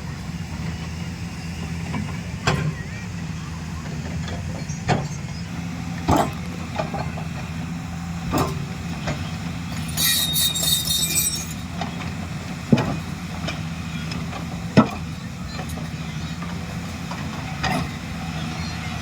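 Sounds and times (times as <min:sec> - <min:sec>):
diesel engine running: 0:00.0 - 0:19.0
high screech: 0:09.7 - 0:11.7.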